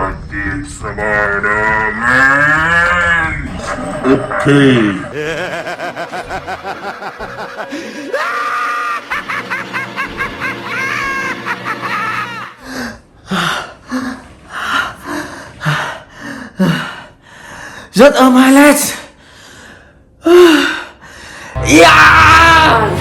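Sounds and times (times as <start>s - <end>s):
cartoonish laughing: 4.0s - 12.6s
music: 9.0s - 12.5s, 21.6s - 23.0s.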